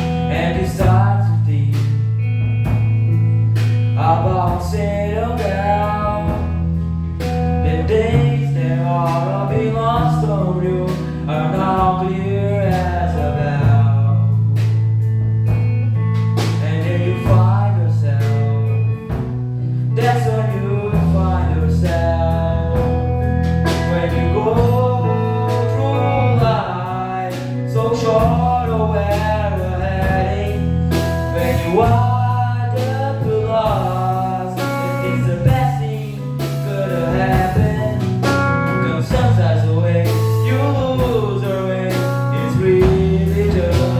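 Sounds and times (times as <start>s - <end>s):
guitar: 0.0s - 43.9s
sustained bass notes: 0.0s - 43.9s
person singing lead: 23.7s - 43.9s.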